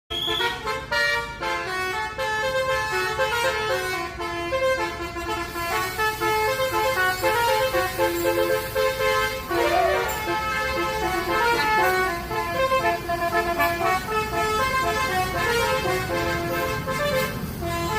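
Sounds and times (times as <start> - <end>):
low engine rumble: 0.1 - 17.9
multi-tone bus air horn tune: 0.1 - 17.9.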